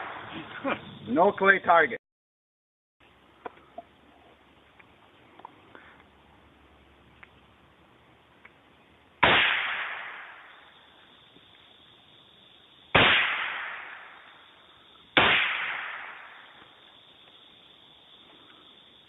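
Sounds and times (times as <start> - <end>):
echoing shotgun shots: 0.0 - 0.3, 9.2 - 10.6, 12.9 - 14.4, 15.2 - 16.6.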